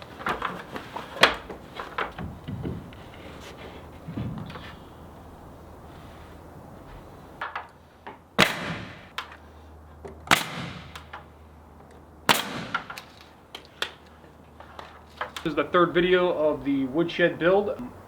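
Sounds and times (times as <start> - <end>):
loud sharp bangs with echo: 8.4 - 9.1, 10.3 - 11.0, 12.3 - 13.0.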